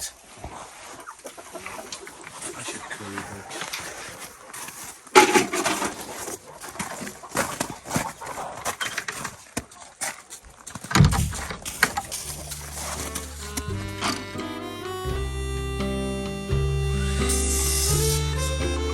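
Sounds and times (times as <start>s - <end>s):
scraping rustling and knocking: 5.2s - 9.4s, 10.1s - 14.3s
background music: 12.7s - 18.9s.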